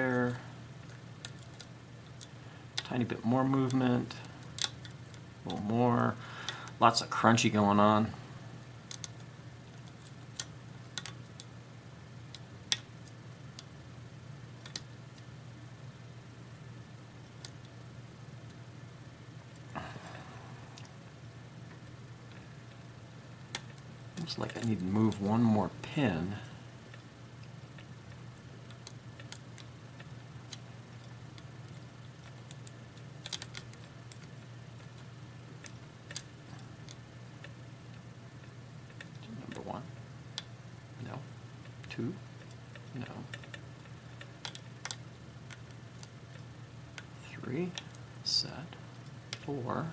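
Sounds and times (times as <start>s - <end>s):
steady low hum: 0.0s - 49.9s.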